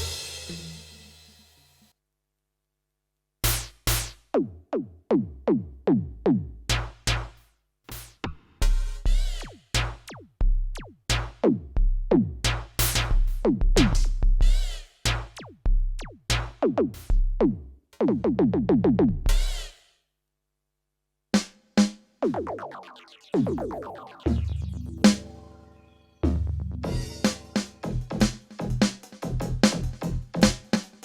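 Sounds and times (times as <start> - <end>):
deep kick drum: 8.6 - 14.6, 15.7 - 16.5, 17.1 - 17.6.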